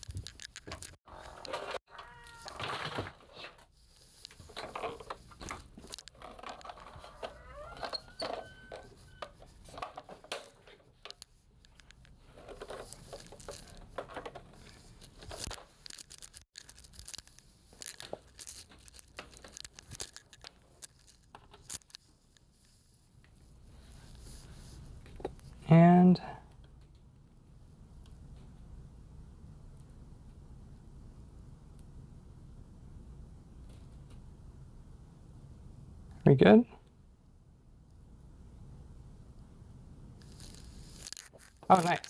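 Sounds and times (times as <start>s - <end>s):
objects handled on workbench: 0.0s - 17.2s.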